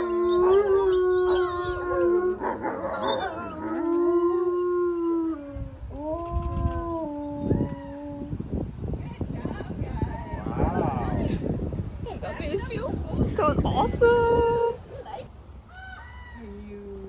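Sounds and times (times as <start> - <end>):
wolves yipping: 0.0 - 4.0
wolves howling in chorus: 0.0 - 5.6.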